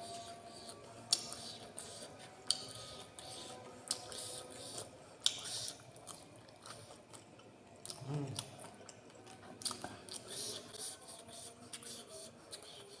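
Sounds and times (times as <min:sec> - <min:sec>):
person chewing food: 0:00.6 - 0:10.8.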